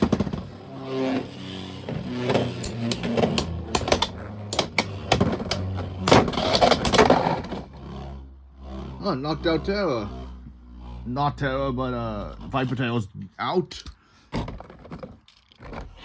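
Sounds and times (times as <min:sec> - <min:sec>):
spinning tops whirring: 0:00.0 - 0:07.8.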